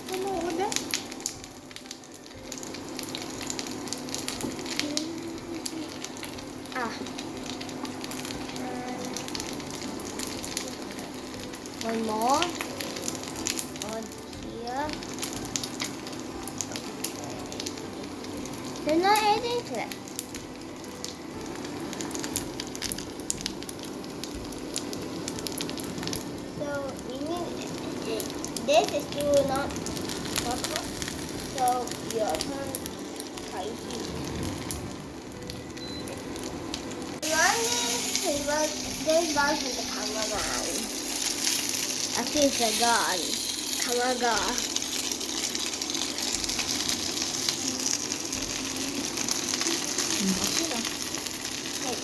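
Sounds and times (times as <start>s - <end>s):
dumplings sizzling in oil: 0.0s - 52.0s
oil spattering crackles and pops: 0.0s - 52.0s.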